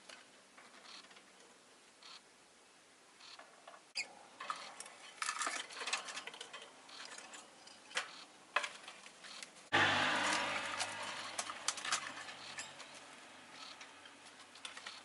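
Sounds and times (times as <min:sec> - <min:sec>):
loud noise with low hum: 0:09.7 - 0:15.0.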